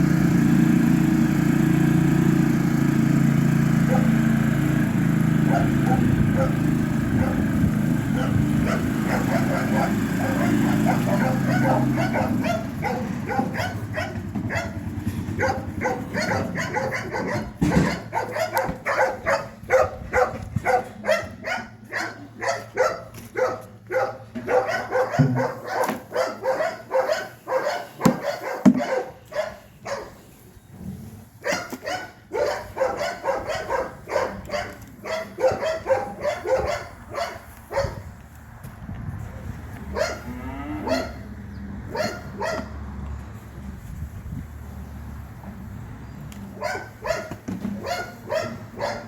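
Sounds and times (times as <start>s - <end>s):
dog barking rapidly: 3.9s - 4.2s, 5.4s - 30.2s, 31.4s - 38.1s, 39.9s - 41.3s, 41.9s - 42.8s, 46.6s - 49.0s
cattle mooing: 40.0s - 41.4s.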